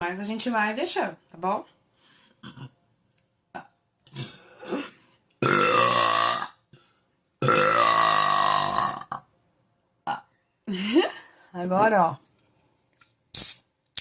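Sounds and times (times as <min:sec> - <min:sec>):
long loud belches: 0:02.4 - 0:02.8, 0:03.5 - 0:04.4, 0:05.4 - 0:06.7, 0:07.4 - 0:09.3, 0:10.0 - 0:10.3.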